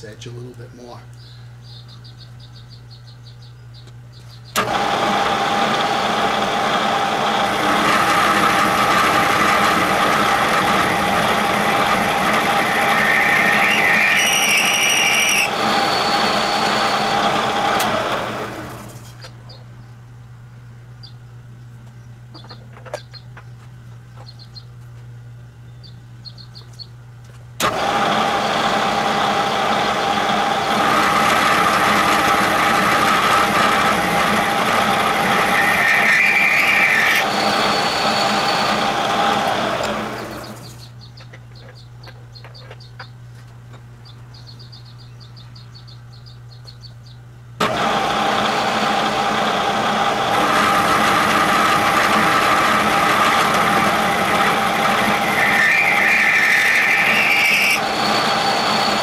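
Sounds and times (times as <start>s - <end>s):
machine tool humming: 4.5s - 19.0s, 27.6s - 40.9s, 47.6s - 59.0s
grinding metal cutting noise: 4.6s - 19.2s, 27.6s - 40.9s, 47.6s - 59.0s.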